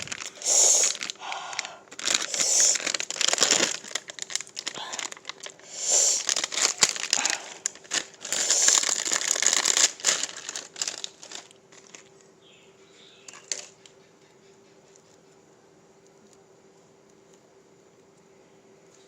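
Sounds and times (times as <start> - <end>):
crinkling and rustling: 0.0 - 12.3, 13.3 - 13.9
faint steady hum: 0.0 - 19.0.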